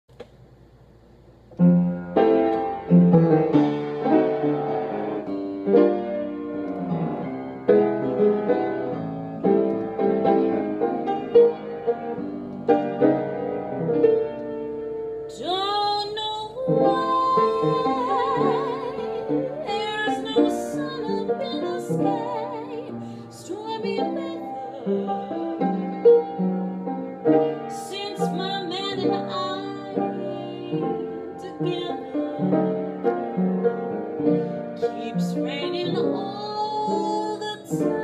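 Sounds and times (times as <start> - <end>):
slow piano ballad: 1.5 - 38.0
person singing: 15.4 - 25.6.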